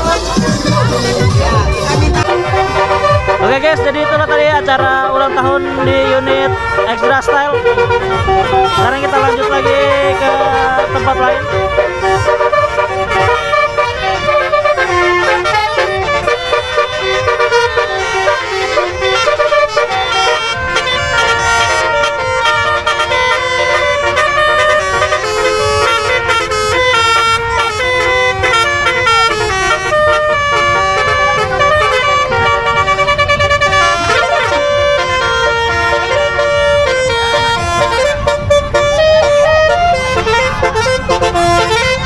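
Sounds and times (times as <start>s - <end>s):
multi-trumpet bus horn tune: 0.0s - 42.0s.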